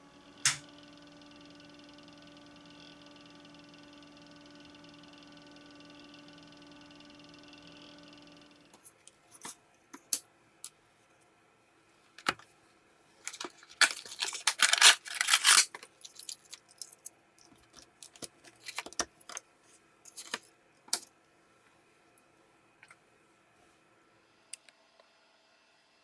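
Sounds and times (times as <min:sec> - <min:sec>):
parts clattering and scraping: 0:13.2 - 0:21.1
small hard parts clicking: 0:13.3 - 0:19.4.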